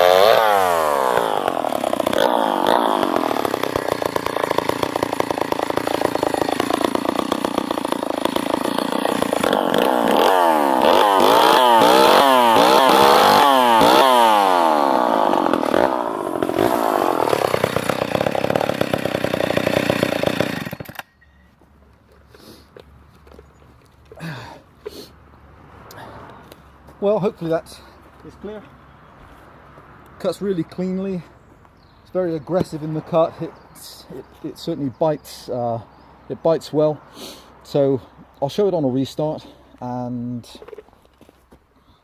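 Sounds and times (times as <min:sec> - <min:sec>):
chainsaw cutting wood: 0:00.0 - 0:21.2.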